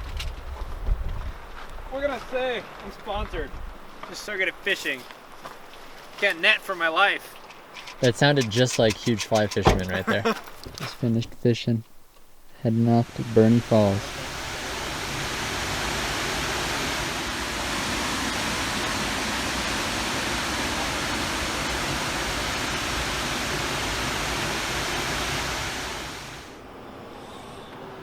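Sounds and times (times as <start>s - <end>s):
fast river water rushing: 13.9s - 26.6s.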